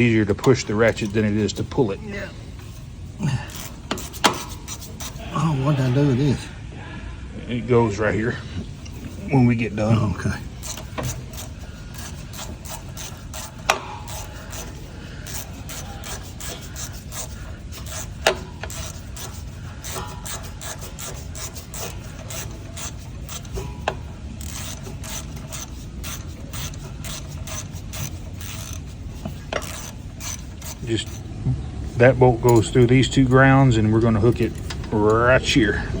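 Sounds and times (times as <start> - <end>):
socket ratchet clicking: 0.0 - 6.0, 10.4 - 31.3.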